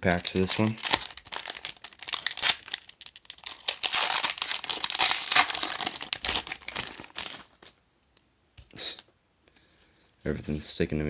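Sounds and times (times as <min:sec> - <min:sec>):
foil wrapper crinkling: 0:00.0 - 0:07.8.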